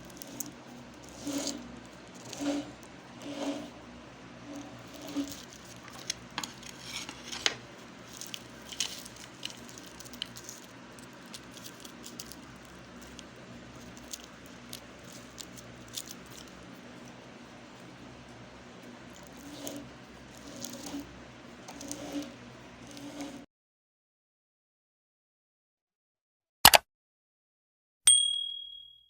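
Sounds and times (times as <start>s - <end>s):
meat grinder crushing candy: 0.0s - 23.4s.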